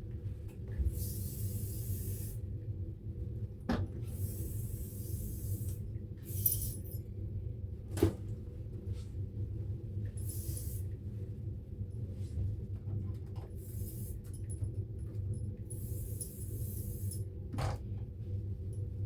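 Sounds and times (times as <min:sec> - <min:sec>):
aerosol spray hissing: 0:00.9 - 0:02.4, 0:04.2 - 0:06.7, 0:10.2 - 0:10.8, 0:13.6 - 0:14.2.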